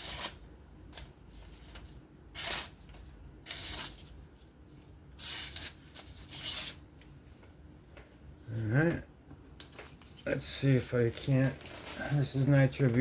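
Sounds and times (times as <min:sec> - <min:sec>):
knife blade slicing paper: 0:05.2 - 0:06.8.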